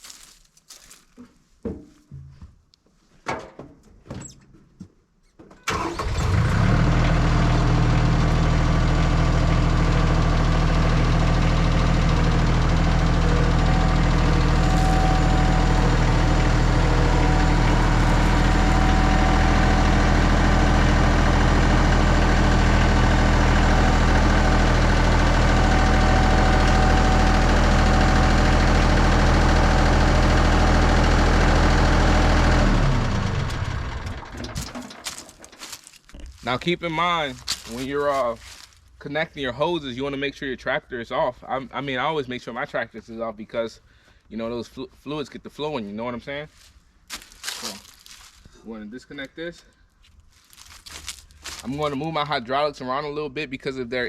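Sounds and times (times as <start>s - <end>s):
tractor diesel engine running: 5.6s - 39.0s, 50.1s - 52.4s.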